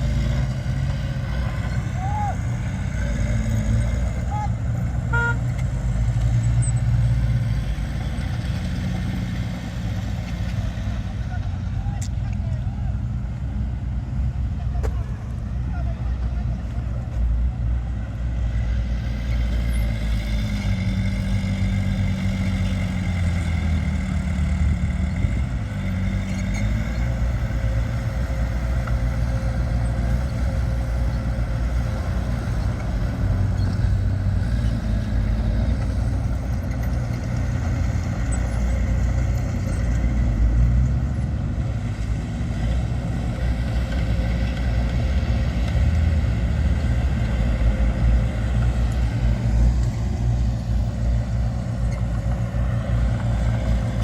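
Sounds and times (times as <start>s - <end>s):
diesel engine rumbling: 0.0s - 54.0s.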